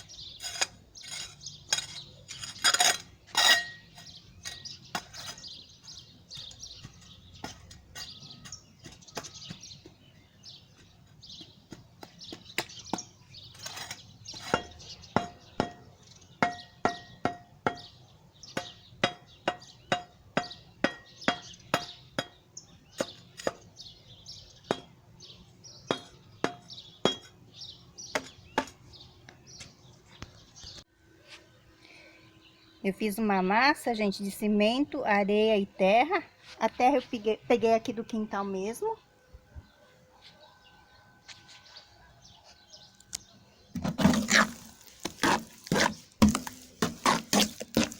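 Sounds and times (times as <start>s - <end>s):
scraping on brick: 0.0s - 5.6s, 6.4s - 9.7s, 10.8s - 14.8s, 43.8s - 47.9s.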